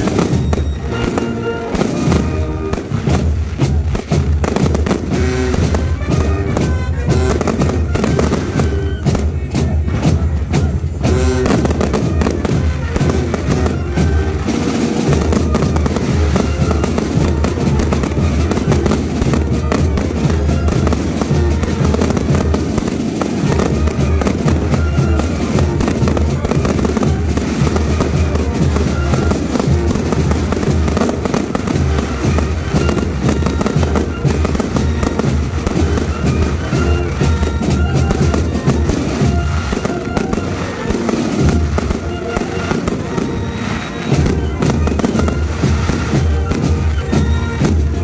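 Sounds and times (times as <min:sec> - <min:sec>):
fireworks bangs and crackling: 0:00.0 - 0:48.0
music: 0:00.0 - 0:48.0.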